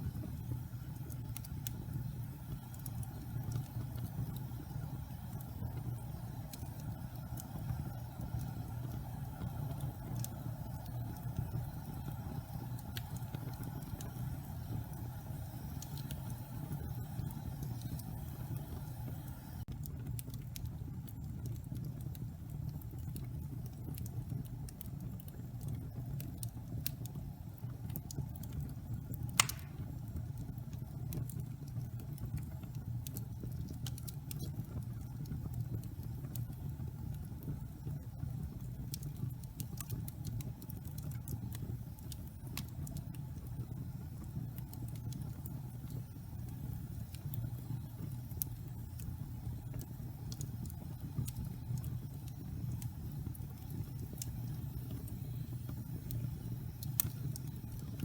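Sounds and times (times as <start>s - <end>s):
wood fire crackling: 0.0s - 58.0s
loud pop from fire: 29.4s - 30.0s.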